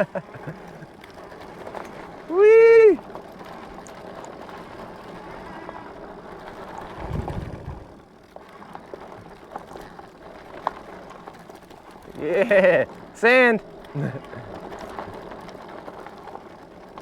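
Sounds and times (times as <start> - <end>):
bike rolling on dirt: 0.0 - 17.0
small clicks and rattles: 3.0 - 17.0
low rumble: 6.8 - 8.0.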